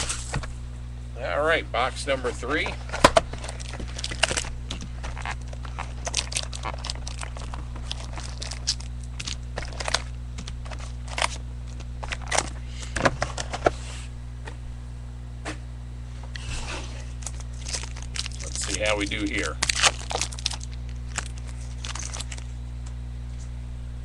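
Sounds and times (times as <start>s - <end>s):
low electrical hum: 0.0s - 24.0s
wrapper and cardboard crackling: 2.5s - 12.6s, 17.0s - 22.6s.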